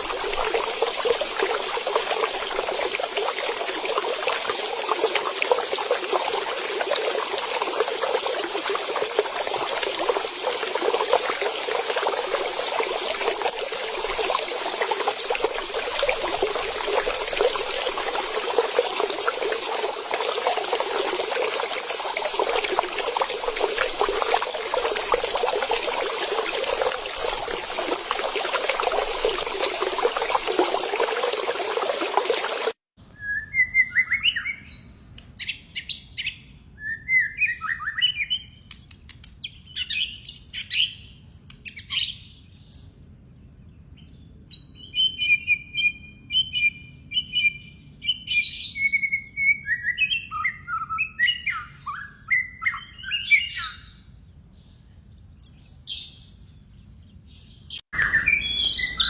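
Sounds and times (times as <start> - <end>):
water trickling and splashing: 0.0 - 32.8.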